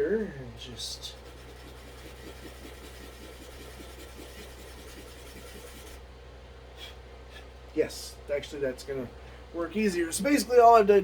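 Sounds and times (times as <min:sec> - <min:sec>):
steady low hum: 0:00.0 - 0:11.0
sandpaper rubbing on wood: 0:01.0 - 0:06.0.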